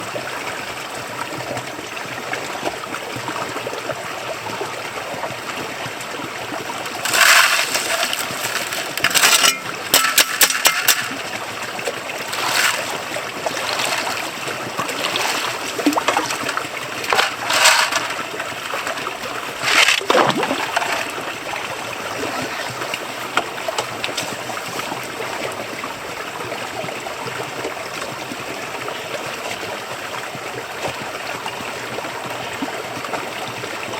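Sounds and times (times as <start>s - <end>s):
water splashing and rattling: 0.0s - 25.9s
creek water flowing: 0.0s - 33.9s.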